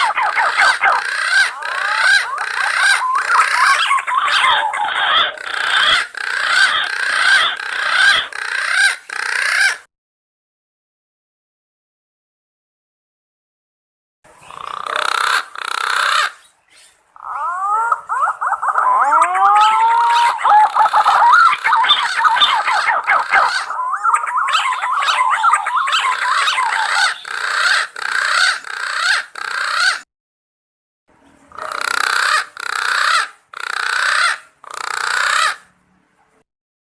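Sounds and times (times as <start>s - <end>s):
pigeons calling with warbling whistles: 0.0s - 9.8s, 14.4s - 30.0s.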